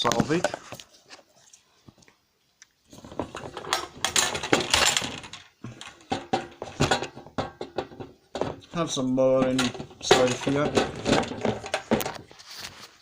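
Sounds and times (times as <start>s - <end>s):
hard objects clattering in container: 2.9s - 12.8s.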